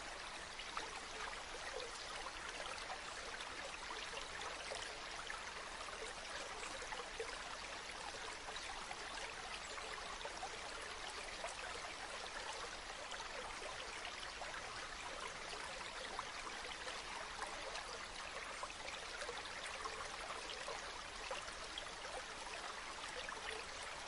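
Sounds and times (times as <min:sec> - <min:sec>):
stream flowing and trickling: 0:00.0 - 0:24.0.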